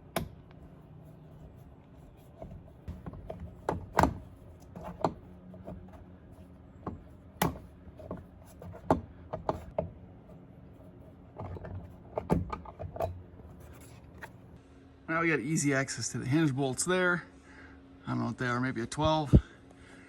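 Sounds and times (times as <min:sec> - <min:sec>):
clicks and knocks on plastic trim: 0:06.8 - 0:10.0.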